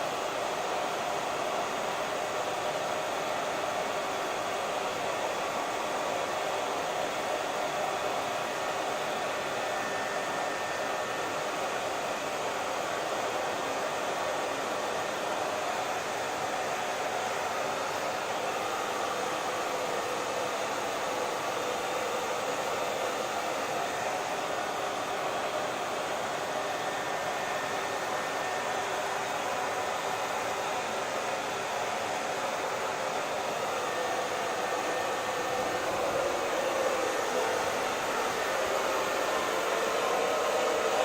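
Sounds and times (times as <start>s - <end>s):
hair dryer blowing: 0.0s - 41.0s.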